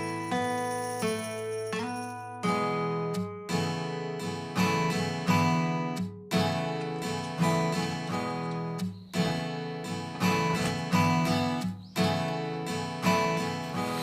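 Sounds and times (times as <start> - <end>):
acoustic guitar strumming: 0.0 - 14.0.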